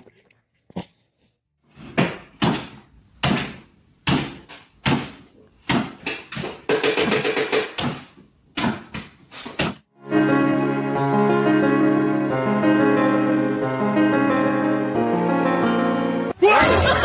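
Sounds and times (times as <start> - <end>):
loud ringing knocks: 5.7 - 8.0.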